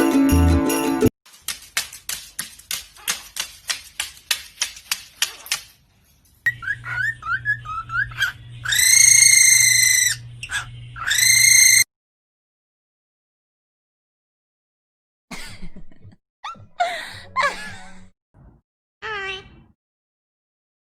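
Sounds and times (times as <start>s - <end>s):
low electrical hum: 5.7s - 11.3s
high-pitched bird whistle: 6.5s - 10.2s, 11.0s - 11.9s
bird chirping: 6.5s - 11.8s.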